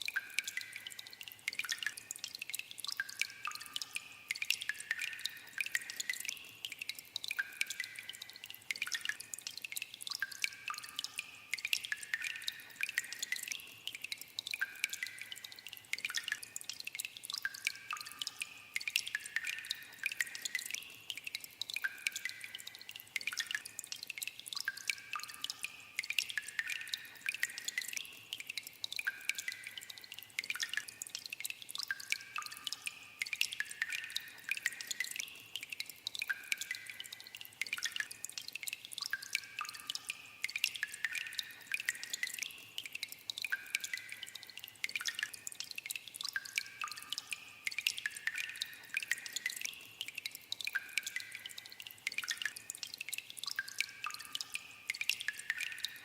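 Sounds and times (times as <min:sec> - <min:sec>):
water dripping in a cave: 0:00.0 - 0:56.0.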